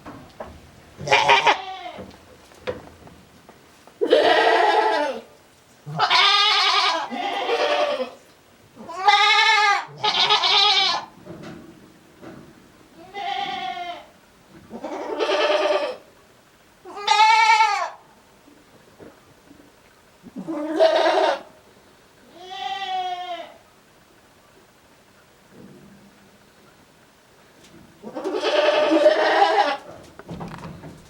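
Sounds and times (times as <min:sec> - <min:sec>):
goat bleating: 0:01.0 - 0:02.1, 0:04.0 - 0:05.3, 0:05.9 - 0:08.2, 0:08.8 - 0:11.1, 0:13.0 - 0:14.1, 0:14.7 - 0:16.0, 0:16.9 - 0:18.0, 0:20.3 - 0:21.5, 0:22.2 - 0:23.6, 0:28.0 - 0:30.0.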